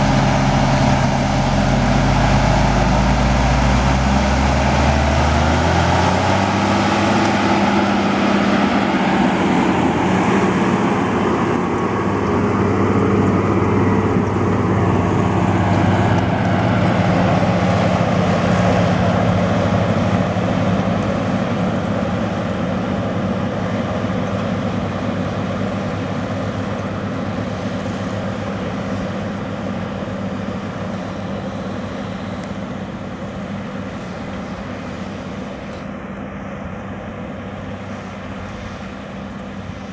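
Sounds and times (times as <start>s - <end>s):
tractor diesel engine under load: 0.0s - 39.9s.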